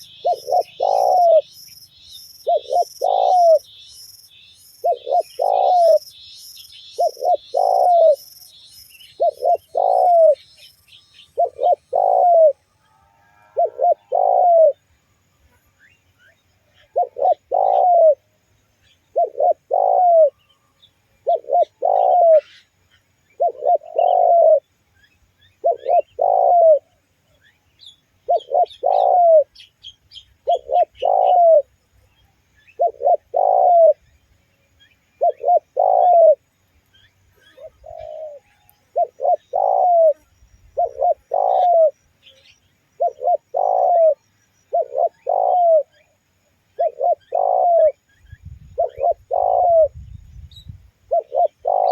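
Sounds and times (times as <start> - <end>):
dove cooing: 0.0 - 1.5, 2.3 - 3.8, 4.8 - 6.2, 6.8 - 8.4, 9.1 - 10.5, 11.3 - 12.6, 13.5 - 14.8, 16.8 - 18.3, 19.1 - 20.4, 21.2 - 22.6, 23.3 - 24.7, 25.6 - 27.0, 28.2 - 29.6, 30.4 - 31.7, 32.8 - 34.0, 35.2 - 36.4, 37.4 - 42.0, 43.0 - 46.1, 46.7 - 48.0, 48.7 - 50.0, 51.1 - 51.9
faint small bird chirps: 0.0 - 12.9, 13.6 - 51.9.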